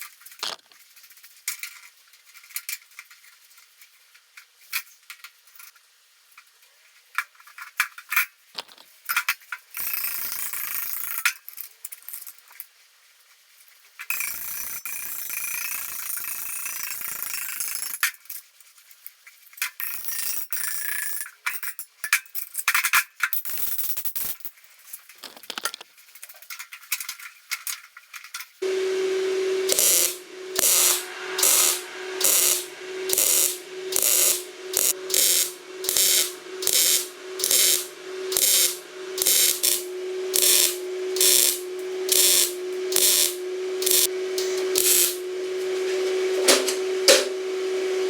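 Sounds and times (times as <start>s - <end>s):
power tool running: 28.6s - 48.0s.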